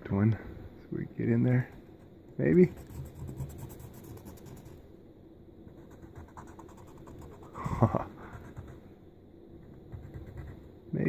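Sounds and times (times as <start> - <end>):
marker scratching on wood: 1.6 - 4.8, 5.7 - 7.6, 8.2 - 8.8, 9.6 - 10.7.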